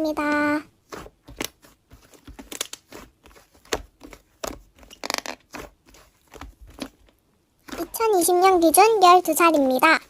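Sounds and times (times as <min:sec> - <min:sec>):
slime squishing with crunchy pops: 0:00.2 - 0:08.0.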